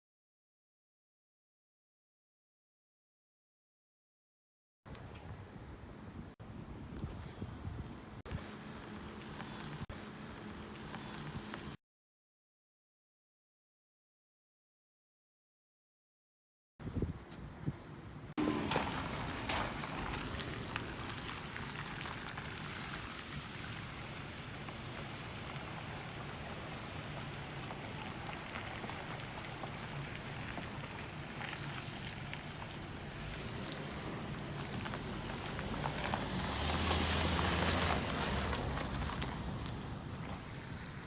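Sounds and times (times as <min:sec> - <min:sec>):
wind: 0:04.9 - 0:11.8, 0:16.8 - 0:41.0
rushing water: 0:18.4 - 0:39.6.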